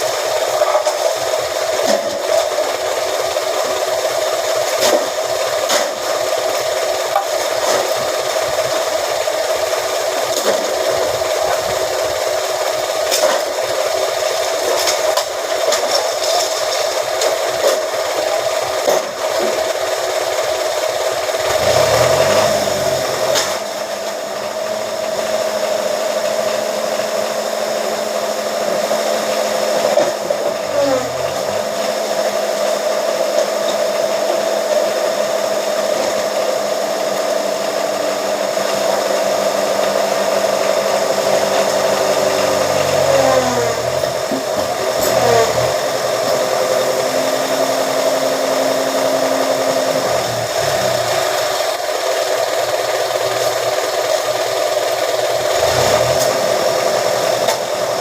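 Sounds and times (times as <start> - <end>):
press machine motor whining: 41.0 - 51.5.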